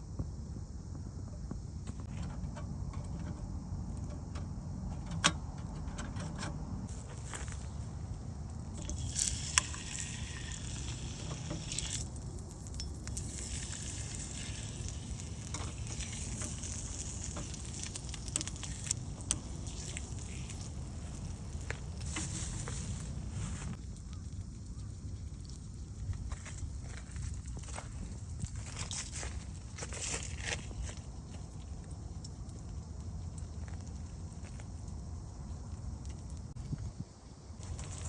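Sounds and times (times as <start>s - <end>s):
sizzling hiss: 6.9s - 24.0s.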